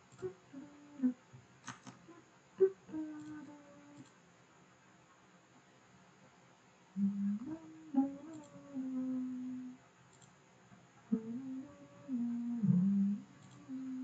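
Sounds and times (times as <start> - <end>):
person humming a tune: 0.0 - 1.2, 2.0 - 4.1, 7.0 - 9.8, 11.1 - 14.0.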